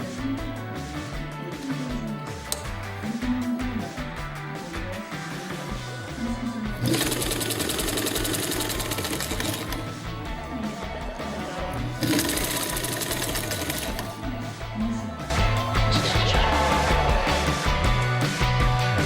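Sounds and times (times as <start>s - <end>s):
background music: 0.0s - 19.0s
electric sewing machine stitching: 6.8s - 9.9s, 12.0s - 14.1s.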